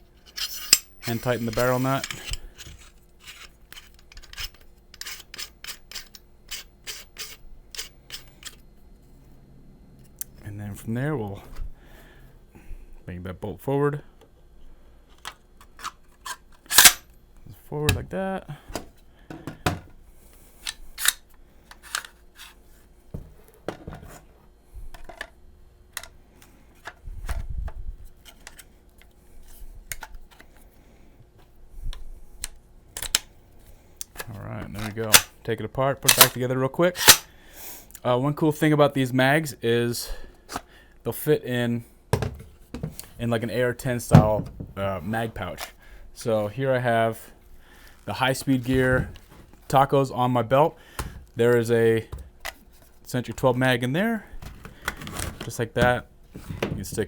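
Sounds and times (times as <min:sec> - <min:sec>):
rubbing of gun parts: 0:00.0 - 0:08.6, 0:15.2 - 0:17.0, 0:36.0 - 0:37.2
metallic scraping clicks of nut: 0:00.2 - 0:08.6, 0:15.2 - 0:17.0, 0:37.0 - 0:37.3
dull handling thump: 0:44.1 - 0:44.8.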